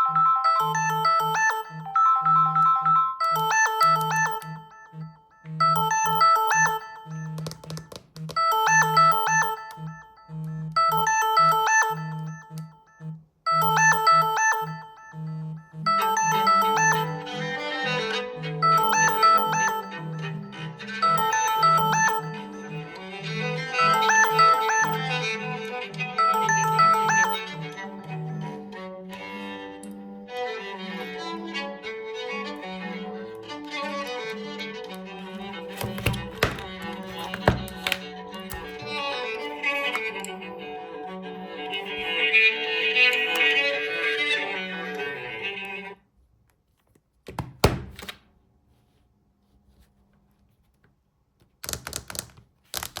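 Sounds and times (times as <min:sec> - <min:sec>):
bowed strings ringtone melody: 0:00.0 - 0:45.5
knocks and taps: 0:07.2 - 0:08.5, 0:35.8 - 0:38.9.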